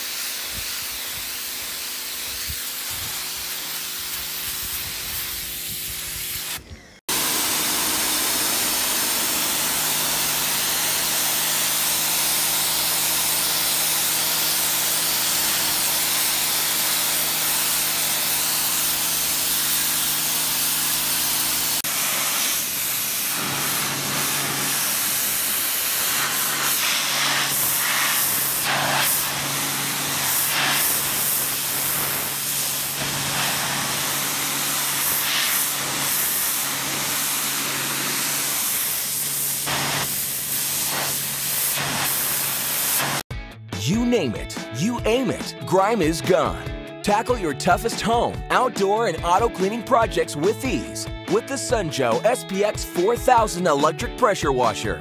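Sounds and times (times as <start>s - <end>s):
pressure washer motor humming: 0.0s - 43.2s
water jet hissing: 0.0s - 43.2s.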